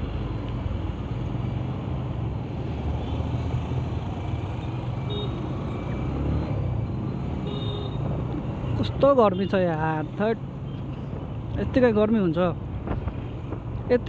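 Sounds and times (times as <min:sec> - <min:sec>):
traffic noise: 0:00.0 - 0:14.0.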